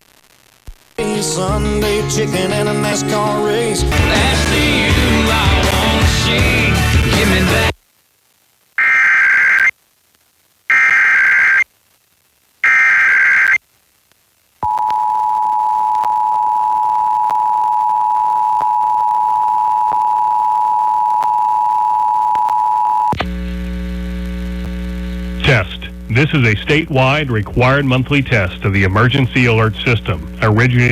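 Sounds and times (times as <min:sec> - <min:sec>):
steady electrical hum: 0:07.7 - 0:30.9
screeching digital data bursts: 0:08.8 - 0:09.7, 0:10.7 - 0:11.6, 0:12.6 - 0:13.6.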